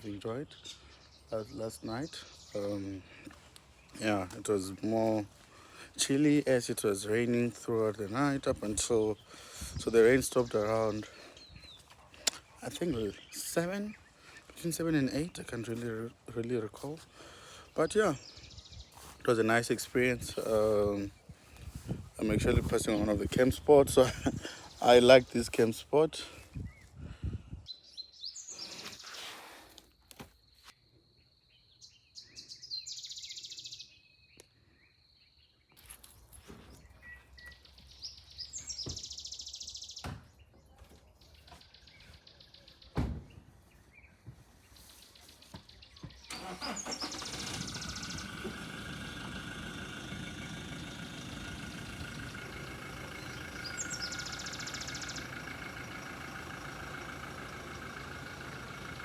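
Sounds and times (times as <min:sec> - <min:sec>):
birds chirping: 0:00.0 - 0:29.5, 0:30.4 - 0:59.0
vehicle engine running: 0:46.4 - 0:59.0.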